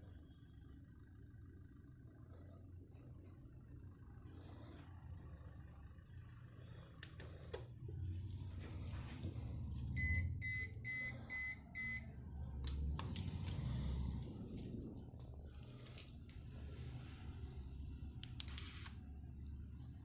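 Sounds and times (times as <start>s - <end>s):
steady low rumble: 5.2s - 20.0s
short electronic beeps: 10.0s - 12.1s
clicks: 18.2s - 19.0s.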